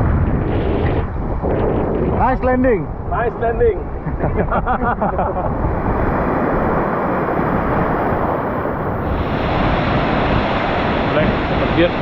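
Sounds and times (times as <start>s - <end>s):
wind rushing: 0.0s - 12.0s
sea water rushing: 5.1s - 12.0s.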